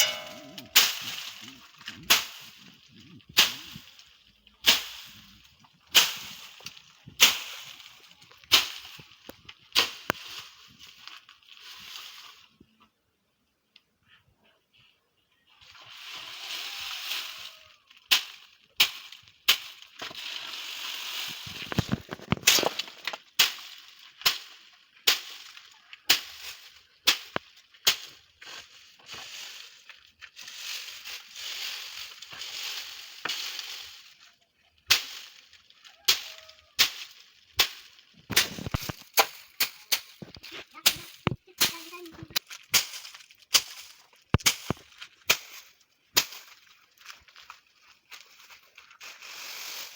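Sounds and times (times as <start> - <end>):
stick thwacking bean plants: 2.1 - 2.6, 4.6 - 5.1, 5.9 - 6.6, 7.2 - 7.8, 21.3 - 25.5, 27.1 - 28.1, 34.9 - 35.4, 36.1 - 46.5
dry pods rustling: 15.6 - 49.9.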